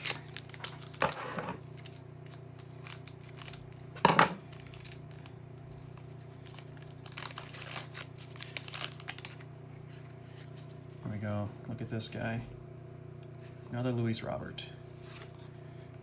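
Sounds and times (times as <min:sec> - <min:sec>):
wrapper tearing: 0:00.0 - 0:05.3, 0:05.9 - 0:09.5
wrapper crinkling: 0:00.0 - 0:10.5
steady low hum: 0:00.0 - 0:16.0.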